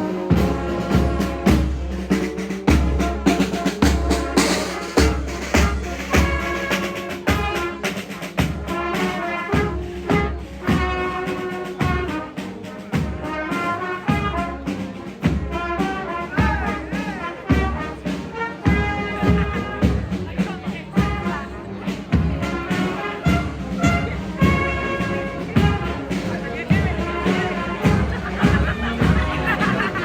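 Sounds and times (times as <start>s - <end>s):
brass and drum band playing: 0.0s - 30.0s
trumpets: 0.0s - 30.0s
bass drum beats: 22.1s - 30.0s.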